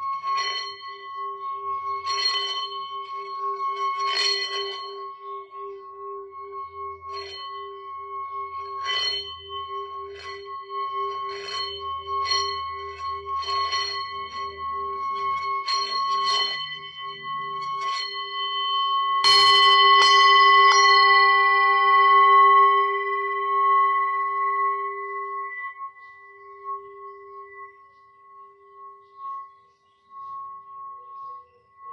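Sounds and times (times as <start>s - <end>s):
singing bowl light strokes: 0.0s - 31.9s
singing bowl pulsing low tone: 0.0s - 31.9s
loud singing bowl strike: 6.9s - 26.6s.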